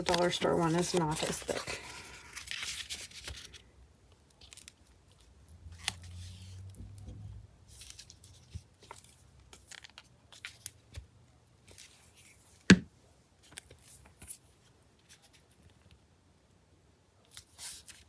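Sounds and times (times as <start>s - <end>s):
card rustling: 0.0s - 3.6s.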